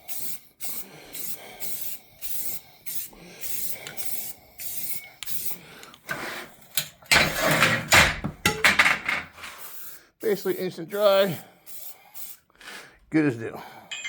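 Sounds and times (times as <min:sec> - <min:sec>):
aerosol can spraying: 0:00.0 - 0:06.4, 0:09.4 - 0:12.4.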